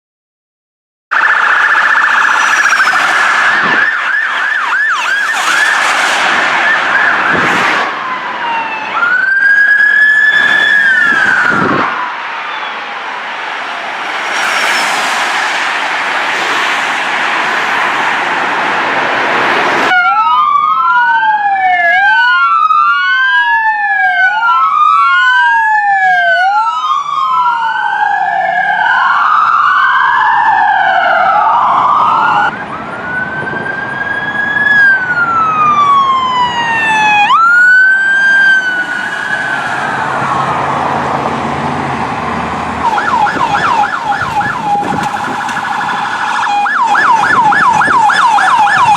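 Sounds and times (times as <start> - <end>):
emergency siren wailing: 1.1 - 48.9
noisy rush: 1.6 - 9.0, 9.8 - 19.9, 38.2 - 48.9.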